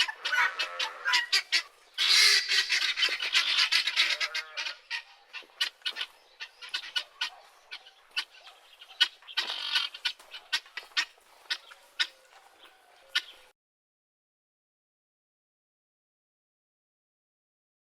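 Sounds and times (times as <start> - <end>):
guinea fowl cackling: 0.0 - 13.5.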